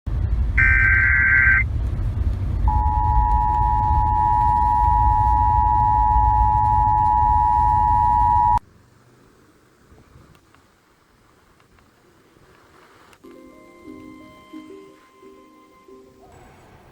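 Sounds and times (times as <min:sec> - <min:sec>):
radio reception noise rumble: 0:00.1 - 0:13.3
two-tone attention signal: 0:00.6 - 0:01.6, 0:02.7 - 0:08.6
warbling data burst: 0:00.6 - 0:01.6, 0:02.7 - 0:08.6.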